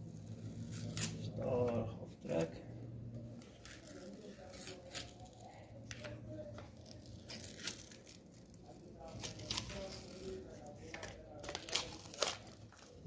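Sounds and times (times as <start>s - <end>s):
wrapping tearing crackles: 0.0s - 1.6s, 3.4s - 13.0s
sharp ripping: 0.4s - 1.4s, 6.8s - 10.4s.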